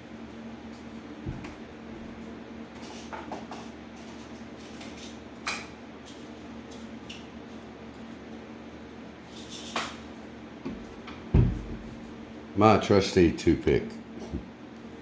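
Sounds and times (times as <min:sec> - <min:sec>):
low electrical hum: 0:00.0 - 0:15.0
soft thump: 0:11.3 - 0:11.9.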